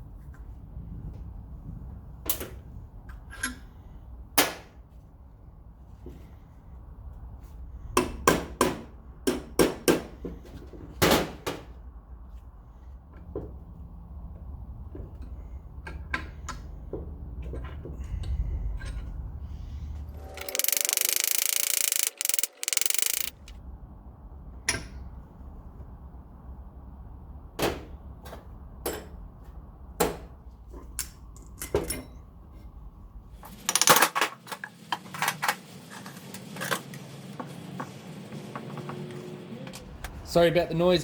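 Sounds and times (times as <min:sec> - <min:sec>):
steady low rumble: 0:39.8 - 0:41.0.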